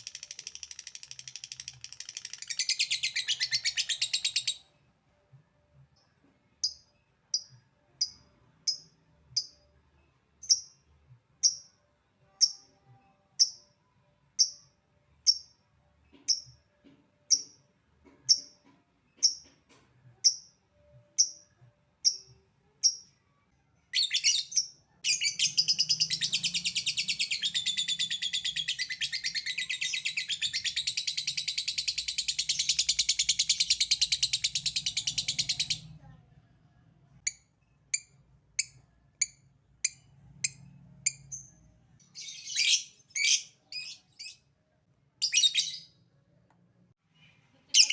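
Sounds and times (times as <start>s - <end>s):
lovebird chirping and trilling: 0.0s - 4.7s, 23.9s - 35.9s, 37.2s - 44.4s, 45.2s - 46.0s.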